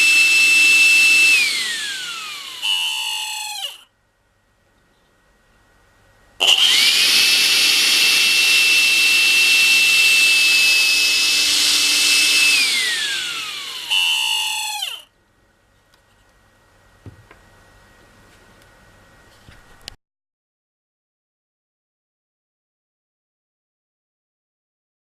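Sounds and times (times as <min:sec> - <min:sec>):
vacuum cleaner motor whine: 0:00.0 - 0:03.8, 0:06.4 - 0:15.0.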